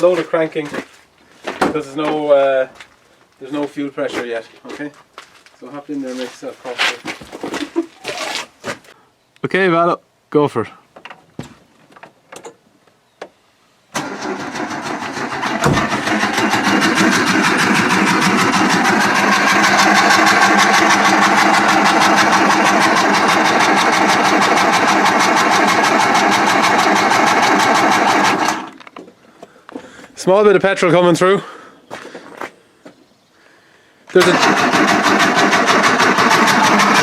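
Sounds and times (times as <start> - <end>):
car engine cranking on starter motor: 13.9 - 28.8, 34.2 - 37.0.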